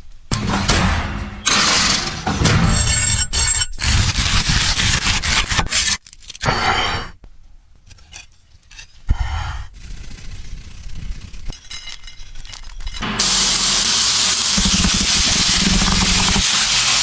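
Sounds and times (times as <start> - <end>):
loud scraping and rubbing: 0.4 - 7.2, 12.9 - 17.0.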